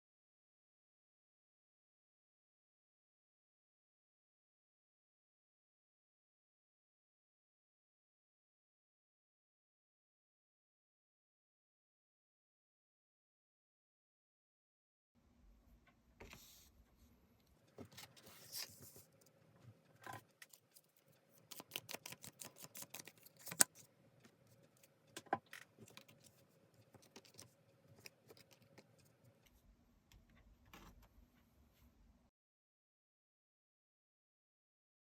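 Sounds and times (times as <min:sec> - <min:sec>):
cards rustling: 0:20.4 - 0:23.8, 0:25.7 - 0:29.2
cards clicking and snapping: 0:21.4 - 0:23.8, 0:26.9 - 0:29.0.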